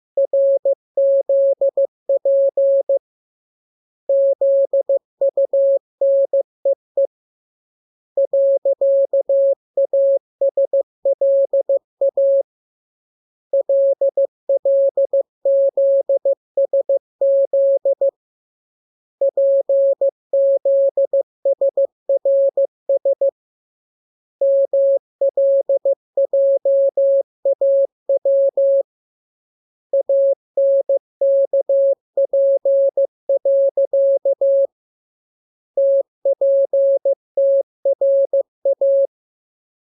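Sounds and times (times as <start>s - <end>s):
morse code tone: 29.9s - 34.7s, 35.8s - 39.1s.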